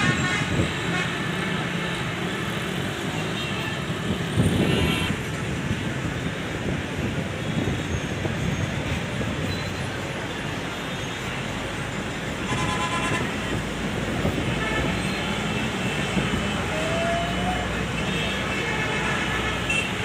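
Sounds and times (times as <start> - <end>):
road traffic passing: 0.0 - 20.0
vehicle horn: 4.5 - 5.2, 12.4 - 13.6, 14.5 - 15.3, 18.0 - 20.0.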